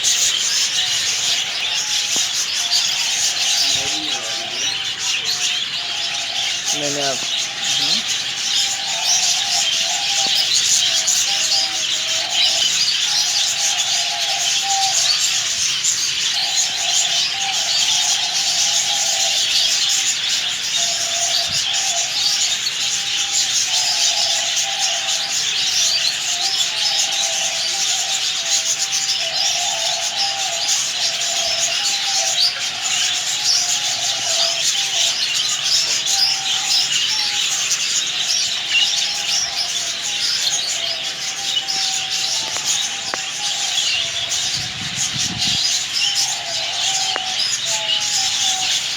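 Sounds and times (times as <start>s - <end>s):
birds chirping: 0.0s - 48.9s
low bird call: 29.0s - 48.9s.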